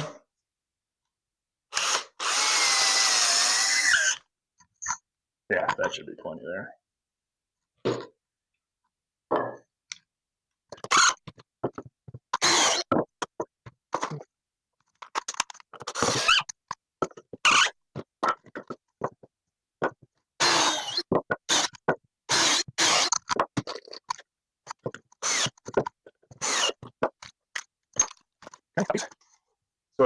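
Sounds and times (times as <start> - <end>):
hand work scrapes and knocks: 22.8 - 27.4.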